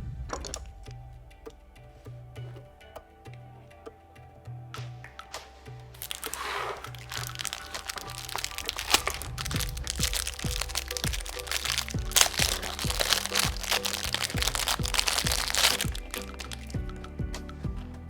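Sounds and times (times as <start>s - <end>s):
background music with drum beat: 4.8s - 18.0s
crackling and crunching clicks: 6.0s - 17.5s.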